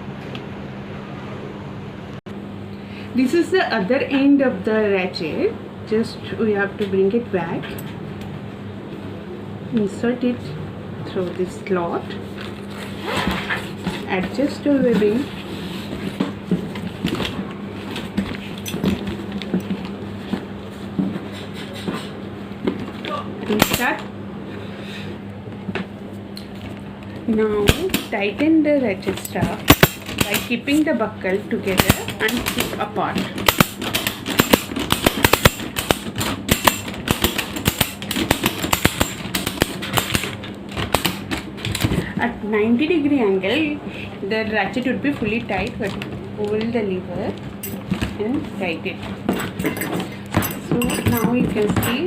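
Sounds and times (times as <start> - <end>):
steady low hum: 0.0 - 52.0
ratchet strap clicks and knocks: 33.4 - 41.8.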